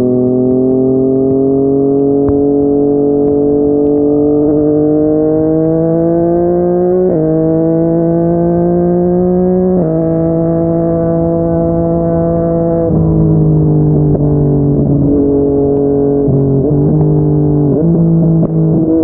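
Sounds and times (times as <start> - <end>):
motorcycle engine shifting up: 8.2 - 19.0.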